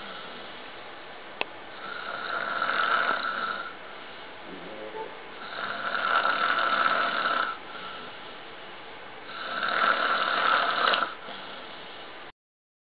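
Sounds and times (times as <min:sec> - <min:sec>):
man snoring loudly: 0:01.8 - 0:03.8, 0:05.4 - 0:07.6, 0:09.3 - 0:11.2
quiet breath: 0:07.6 - 0:08.6, 0:11.2 - 0:12.3.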